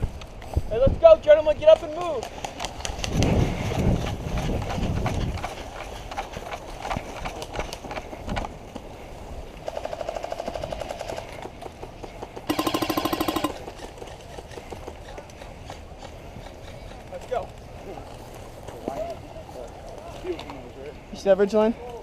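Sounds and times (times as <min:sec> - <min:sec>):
airsoft guns firing bursts: 0:09.6 - 0:11.4, 0:12.4 - 0:13.8.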